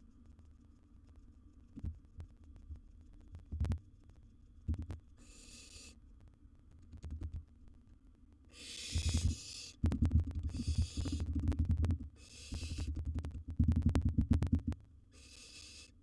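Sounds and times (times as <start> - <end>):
owl chick hissing calls: 5.2 - 6.0, 8.5 - 9.8, 10.4 - 11.4, 12.2 - 13.0, 15.1 - 16.0
knocks and scratching in nest box: 8.6 - 14.0.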